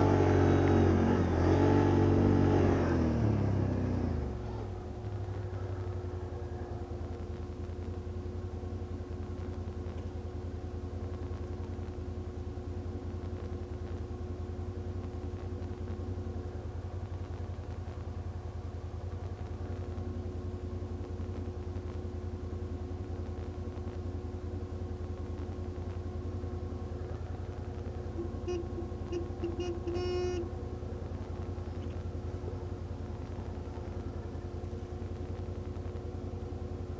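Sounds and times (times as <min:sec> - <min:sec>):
engine droning: 0:00.0 - 0:36.9
horn toots and blast: 0:28.2 - 0:30.5.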